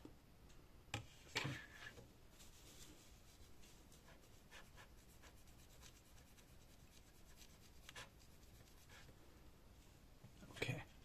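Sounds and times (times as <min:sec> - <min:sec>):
hands rubbing laptop parts: 0:01.3 - 0:09.1.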